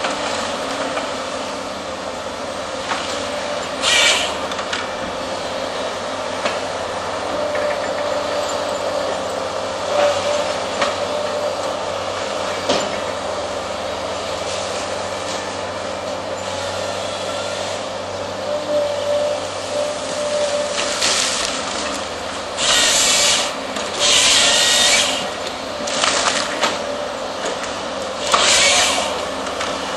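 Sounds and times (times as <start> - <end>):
excavator engine and hydraulics whine: 0.0 - 29.9
loud hydraulic hiss: 3.8 - 4.4, 22.6 - 25.4, 28.2 - 29.2.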